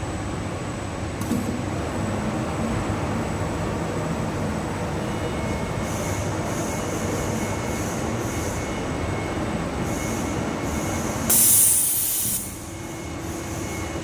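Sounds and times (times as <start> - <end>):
compressed air hiss: 11.3 - 12.7.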